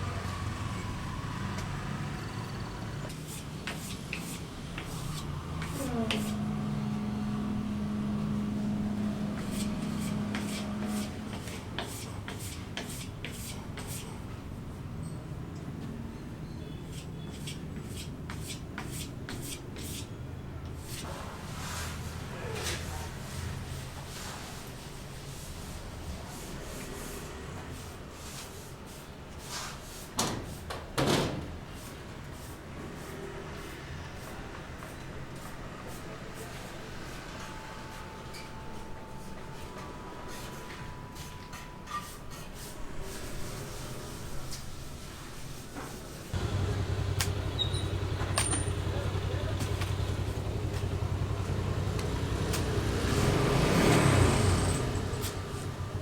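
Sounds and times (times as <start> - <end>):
engine pulsing hum: 5.4 - 10.9, 46.4 - 56.0.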